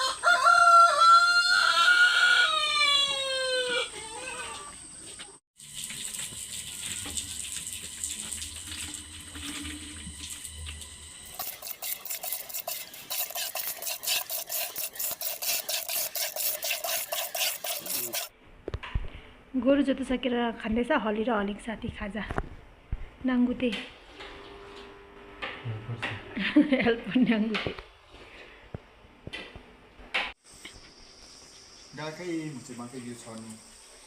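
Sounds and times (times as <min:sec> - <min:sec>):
rooster crowing: 0:00.0 - 0:04.8
rhythmic strokes: 0:11.3 - 0:18.3
steady hiss with low hum: 0:29.8 - 0:34.0.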